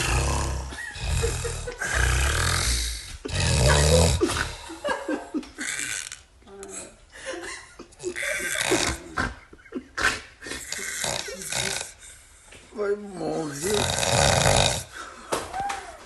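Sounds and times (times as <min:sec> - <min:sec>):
person snoring: 0:00.0 - 0:04.8, 0:05.6 - 0:07.0, 0:08.0 - 0:09.4, 0:10.0 - 0:12.2, 0:13.2 - 0:15.1.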